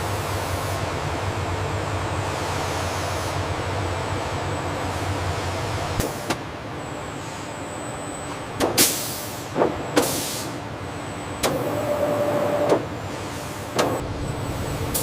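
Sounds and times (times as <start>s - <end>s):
machinery running hum: 0.0s - 15.0s
short air hisses: 8.8s - 10.6s
machine whine: 10.8s - 15.0s.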